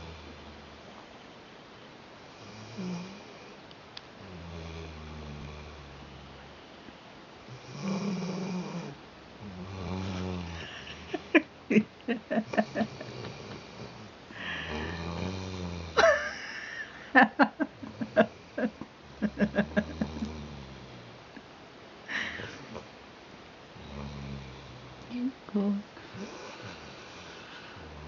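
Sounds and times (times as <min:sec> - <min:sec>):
puppy snoring: 0:00.0 - 0:00.6, 0:02.3 - 0:03.6, 0:04.2 - 0:06.5, 0:07.5 - 0:11.4, 0:12.4 - 0:16.0, 0:17.9 - 0:21.2, 0:23.8 - 0:25.2, 0:26.0 - 0:28.0.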